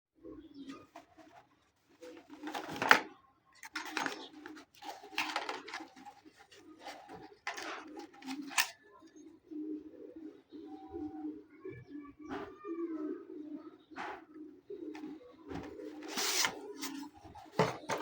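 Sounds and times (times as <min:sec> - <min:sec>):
rustling packaging: 0:00.9 - 0:08.8, 0:15.0 - 0:18.0
low cooing: 0:05.2 - 0:18.0.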